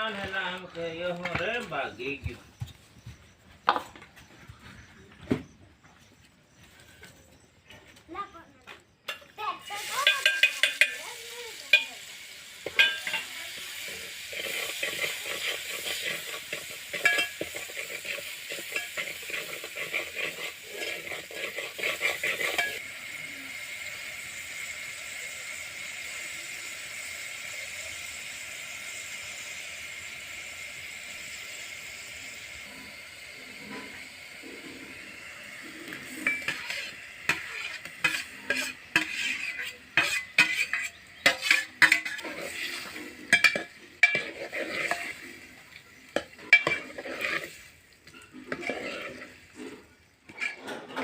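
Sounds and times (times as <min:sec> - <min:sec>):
food sizzling in a pan: 0:08.9 - 0:51.0
metal spoon stirring and scraping pan: 0:09.1 - 0:22.8, 0:31.3 - 0:51.0.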